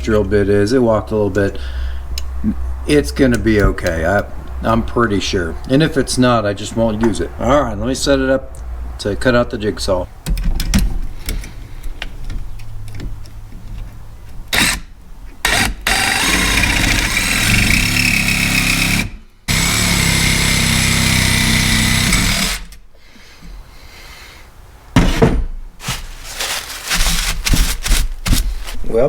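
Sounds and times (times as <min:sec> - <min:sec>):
jigsaw cutting steel: 0:15.5 - 0:22.7.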